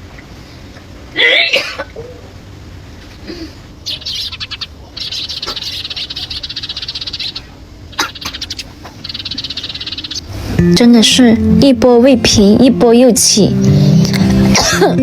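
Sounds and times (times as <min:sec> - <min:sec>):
animal high-pitched pulsing trill: 0:03.8 - 0:10.3.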